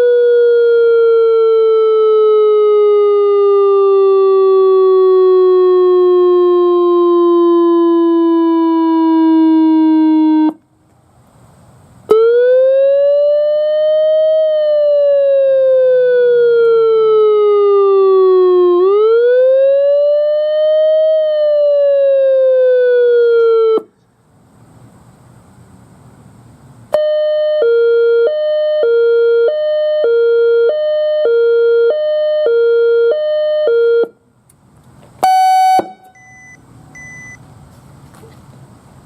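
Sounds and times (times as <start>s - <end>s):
pulsing falling siren tone: 0.0s - 10.6s, 12.1s - 23.8s, 27.0s - 34.1s
siren wailing: 0.0s - 10.6s, 12.1s - 23.9s, 27.0s - 34.1s, 35.2s - 36.5s.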